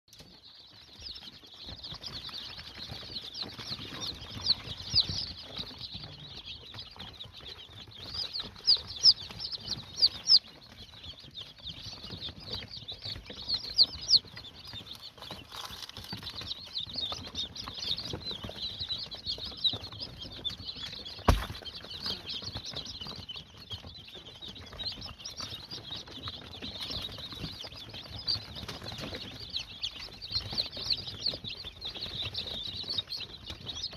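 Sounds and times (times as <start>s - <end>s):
chicks peeping: 0.1s - 33.9s
sharp knock: 21.3s - 21.8s.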